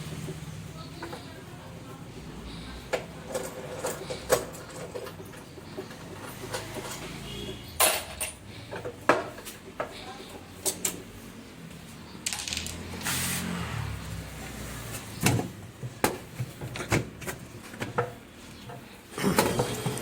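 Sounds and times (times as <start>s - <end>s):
metal tools clinking and knocking: 7.8s - 9.4s, 12.2s - 13.0s.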